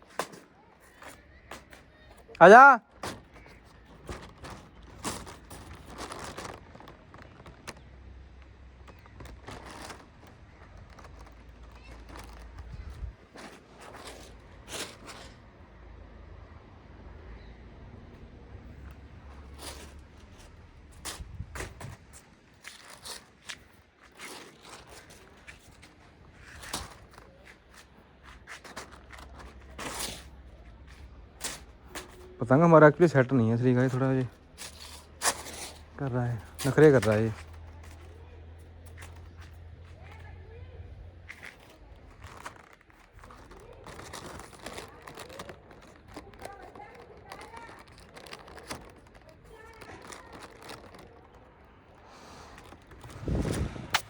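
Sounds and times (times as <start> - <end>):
rustling and light knocks: 0.0 - 15.6, 18.6 - 54.0
wind rumbling on microphone: 4.1 - 13.3, 20.9 - 22.4, 52.6 - 54.0
wind rumble on microphone: 12.6 - 13.3, 20.9 - 22.3, 52.9 - 54.0.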